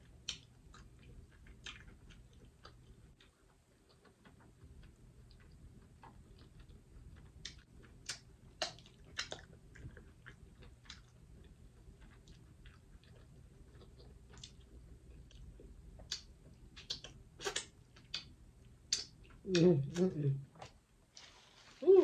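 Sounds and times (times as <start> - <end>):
person chewing: 0.2 - 18.3
wet mouth clicks and smacks: 7.4 - 9.5, 16.0 - 18.3, 18.9 - 19.4.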